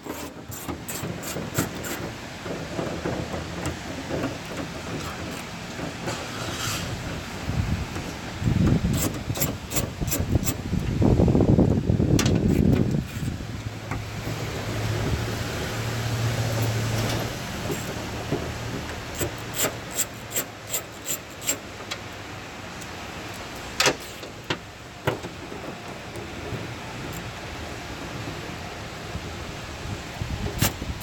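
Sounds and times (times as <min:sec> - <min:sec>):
handling noise: 0:00.0 - 0:11.0.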